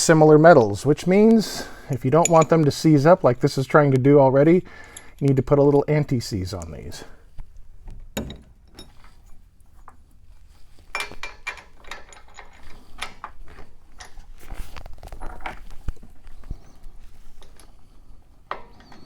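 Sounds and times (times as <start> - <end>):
small metal hardware clinking: 0.5 - 3.4, 4.4 - 7.0, 8.0 - 10.0, 10.9 - 14.3.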